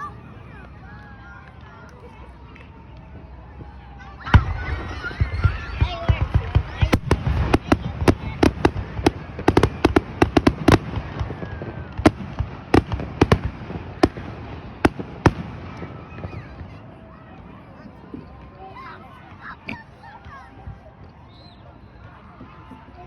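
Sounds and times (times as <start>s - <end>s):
fireworks cracks and bangs: 3.0s - 21.1s.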